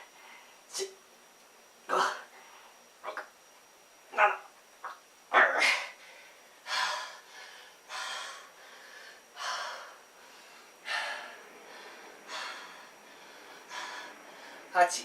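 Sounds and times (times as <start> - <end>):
man breathing hard: 5.6 - 14.7.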